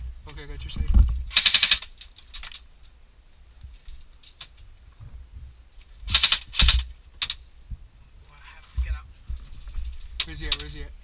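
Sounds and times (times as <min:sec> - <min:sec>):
airsoft gun firing bursts: 0:01.3 - 0:01.9, 0:06.1 - 0:06.9.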